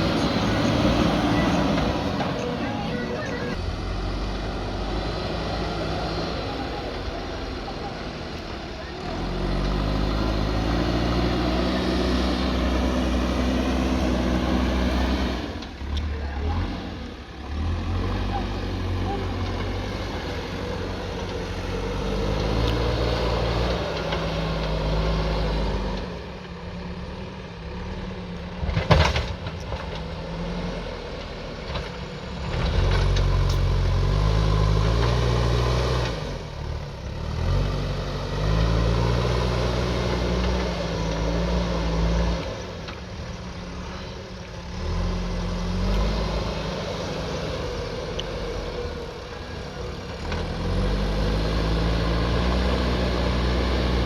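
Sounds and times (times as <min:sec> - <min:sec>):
diesel engine working: 0:00.0 - 0:54.0.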